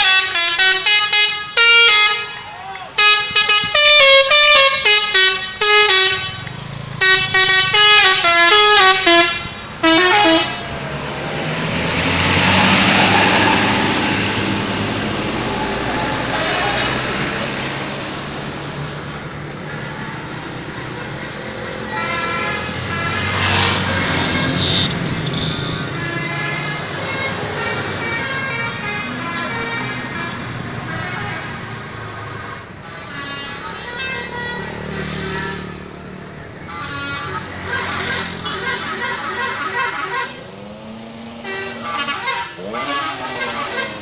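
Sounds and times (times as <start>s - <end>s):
musical bus horn tune: 0.0s - 10.8s, 20.7s - 31.8s, 32.4s - 35.8s, 36.6s - 44.0s
road noise: 0.0s - 44.0s
bus engine running: 3.2s - 44.0s.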